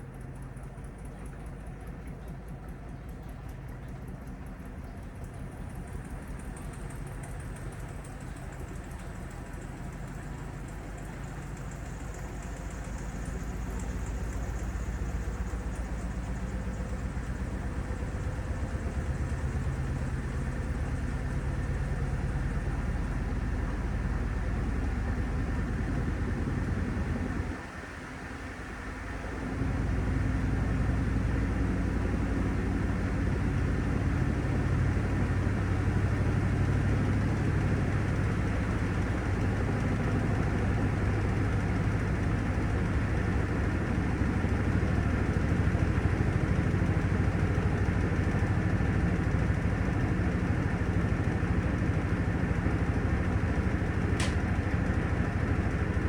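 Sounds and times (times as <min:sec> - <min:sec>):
short click: 0:54.2 - 0:54.4.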